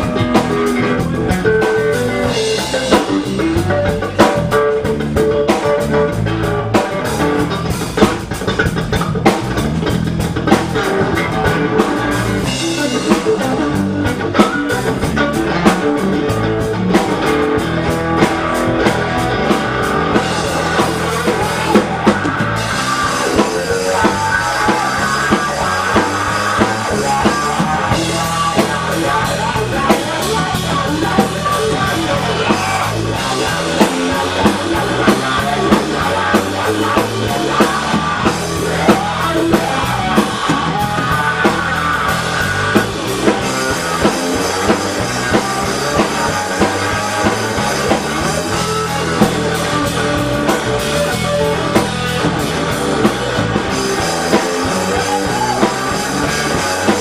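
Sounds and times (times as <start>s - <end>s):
blues-rock band playing: 0.0s - 57.0s.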